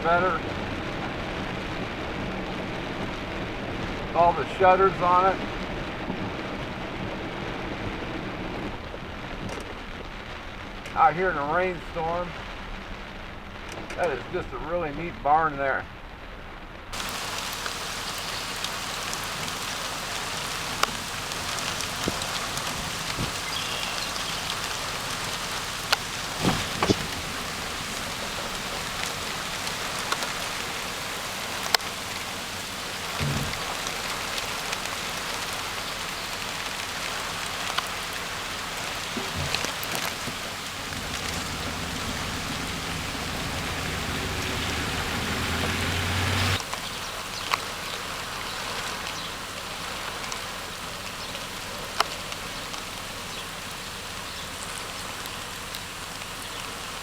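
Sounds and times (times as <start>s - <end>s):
steady rain falling: 0.0s - 57.0s
low rumble: 40.7s - 45.9s.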